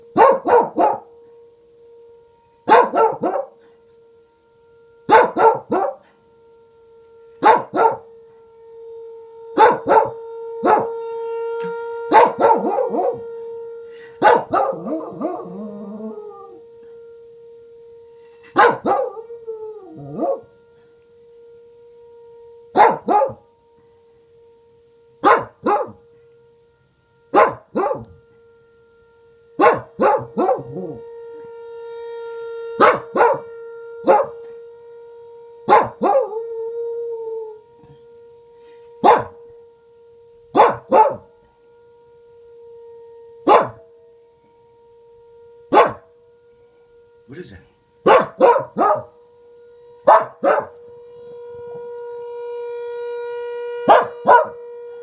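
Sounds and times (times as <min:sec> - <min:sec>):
tornado siren: 0:00.0 - 0:55.0
dog barking: 0:00.2 - 0:01.1, 0:02.7 - 0:03.6, 0:05.1 - 0:06.1, 0:07.4 - 0:08.0, 0:09.6 - 0:10.9, 0:12.1 - 0:13.2, 0:14.2 - 0:15.4, 0:18.5 - 0:19.2, 0:22.8 - 0:23.4, 0:25.2 - 0:26.0, 0:27.3 - 0:28.1, 0:29.6 - 0:30.8, 0:32.8 - 0:34.4, 0:35.7 - 0:36.3, 0:39.0 - 0:39.4, 0:40.6 - 0:41.2, 0:43.5 - 0:43.8, 0:45.7 - 0:46.1, 0:48.0 - 0:49.1, 0:50.1 - 0:50.8, 0:53.9 - 0:54.6
dog howling: 0:11.6 - 0:13.2, 0:18.5 - 0:20.5, 0:32.8 - 0:34.4, 0:35.7 - 0:37.6, 0:39.0 - 0:39.4, 0:40.6 - 0:41.3, 0:48.0 - 0:49.1, 0:50.0 - 0:50.8, 0:53.8 - 0:54.6.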